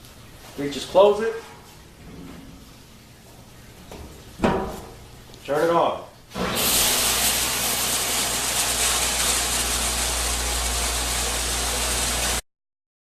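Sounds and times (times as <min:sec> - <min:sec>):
water spraying: 0:06.3 - 0:12.4
low machine hum: 0:07.0 - 0:12.4.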